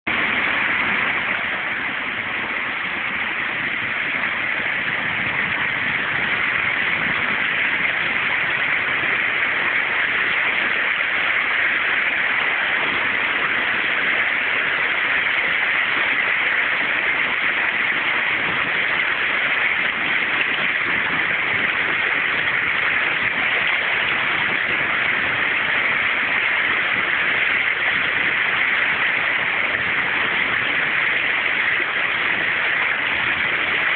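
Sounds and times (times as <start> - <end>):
river water rushing over stones: 0.1 - 33.9.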